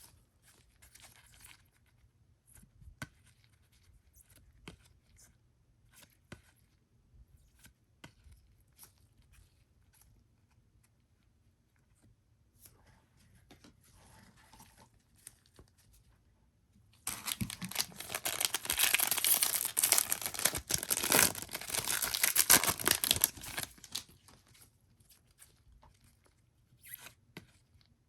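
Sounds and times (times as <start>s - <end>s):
foil wrapper tearing and crinkling: 17.1s - 24.2s.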